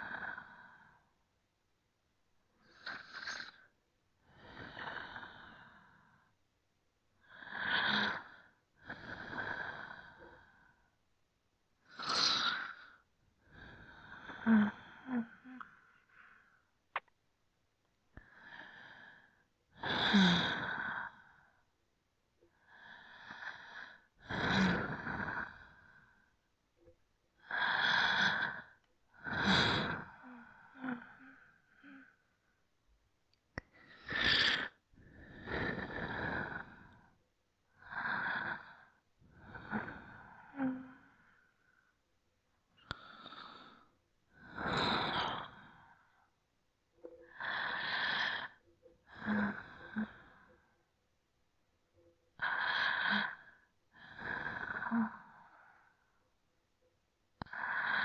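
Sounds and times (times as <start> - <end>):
person breathing slowly: 2.6 - 6.4, 11.8 - 16.8, 27.4 - 32.6, 33.6 - 42.0, 42.8 - 46.3, 47.0 - 50.8, 52.4 - 56.2.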